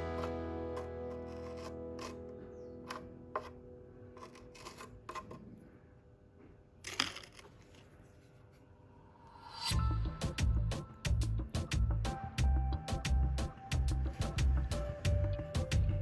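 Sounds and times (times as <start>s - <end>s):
background music: 0.0s - 3.8s, 9.4s - 16.0s
small objects clicking: 6.8s - 7.8s.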